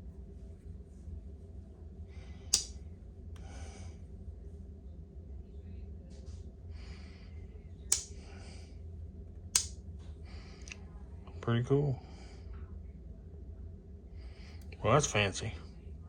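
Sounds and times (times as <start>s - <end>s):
pocket knife blades snapping: 2.6s - 2.8s
soft breathing: 3.4s - 4.2s, 6.2s - 8.9s, 10.1s - 11.3s, 11.9s - 12.8s, 14.0s - 14.8s.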